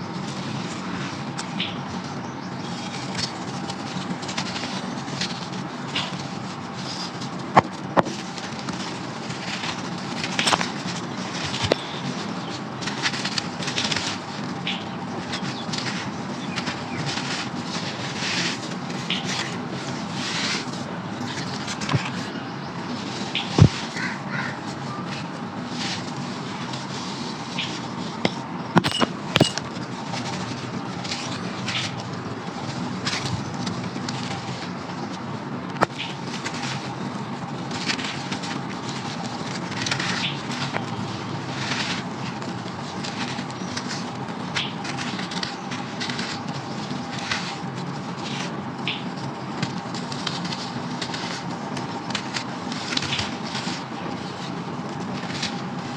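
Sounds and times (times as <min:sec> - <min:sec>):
steady low hum: 0:00.0 - 0:55.9
dried clay crumbling and snapping: 0:02.6 - 0:14.6.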